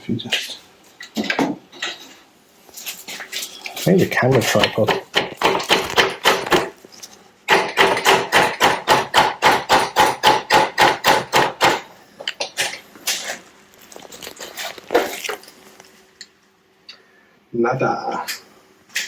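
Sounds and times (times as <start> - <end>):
scattered knocks and clicks: 4.3 - 6.8, 7.5 - 11.8.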